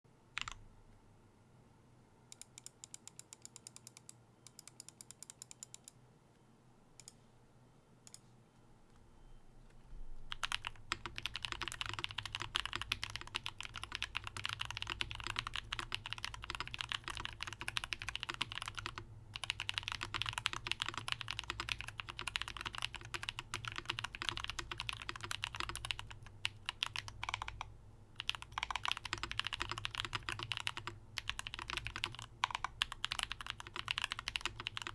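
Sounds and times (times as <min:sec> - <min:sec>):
mechanical keyboard typing: 0:00.4 - 0:00.6, 0:02.3 - 0:05.9, 0:10.3 - 0:34.9.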